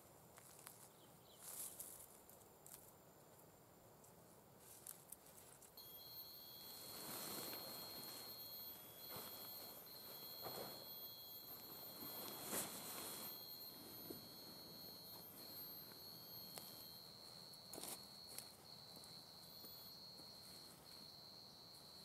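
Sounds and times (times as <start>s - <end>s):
steady high-pitched tone: 5.8s - 22.0s.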